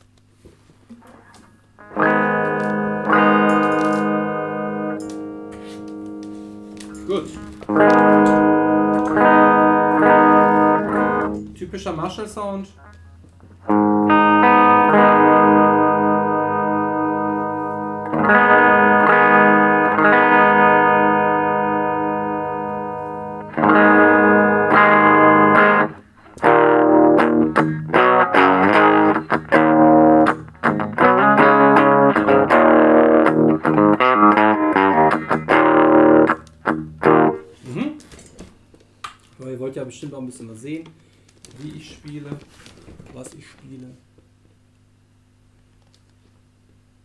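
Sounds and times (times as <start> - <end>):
electric guitar chords: 0.9 - 37.8.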